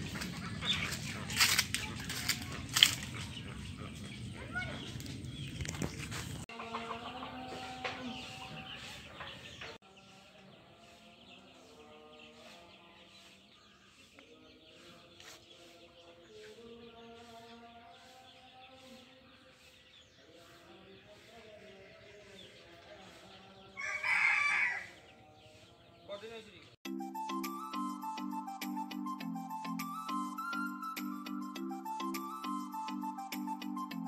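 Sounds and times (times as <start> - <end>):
chickens clucking: 0.0 - 26.4.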